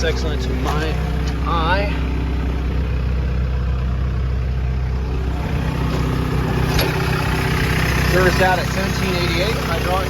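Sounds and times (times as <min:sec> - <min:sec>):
diesel excavator idling: 0:00.0 - 0:10.0.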